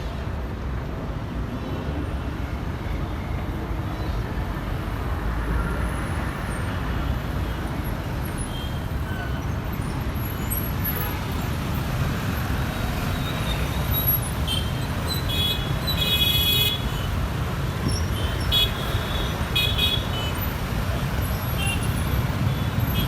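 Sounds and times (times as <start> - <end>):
road traffic: 0.0 - 23.0
vehicle horns honking: 14.5 - 17.2, 18.0 - 20.5.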